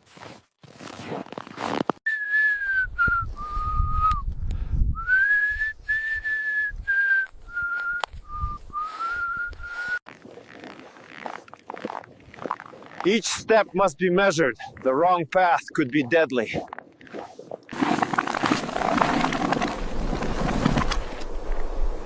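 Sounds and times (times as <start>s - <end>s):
person whistling a slow tune: 2.1s - 4.3s, 4.9s - 10.0s.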